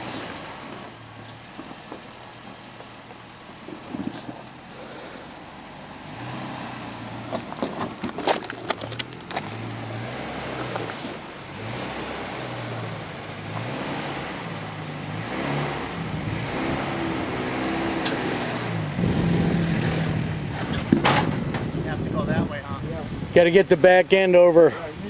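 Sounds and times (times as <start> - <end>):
off-road vehicle engine revving: 3.6 - 25.0
sharp knocks: 19.0 - 21.9.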